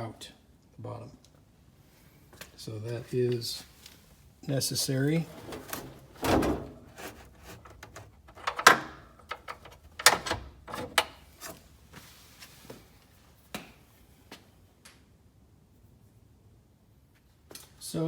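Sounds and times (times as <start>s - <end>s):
generator tray scraping: 4.8s - 11.7s
hard clunks and knocks: 5.4s - 11.1s.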